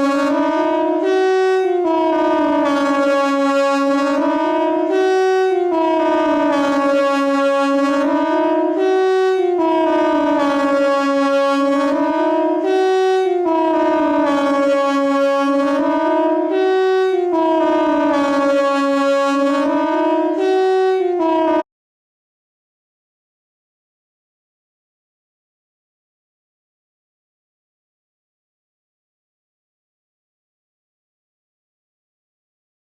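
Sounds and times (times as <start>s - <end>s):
siren: 0.0s - 21.6s.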